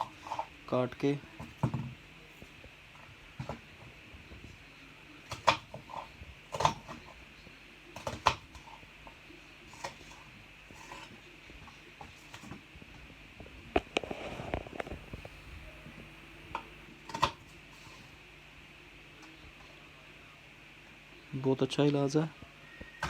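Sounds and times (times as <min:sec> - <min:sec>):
clicks and handling noise: 0:08.0 - 0:17.6.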